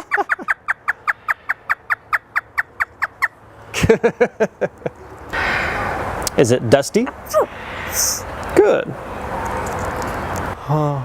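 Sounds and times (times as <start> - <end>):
parrot imitating a laugh: 0.0 - 0.8.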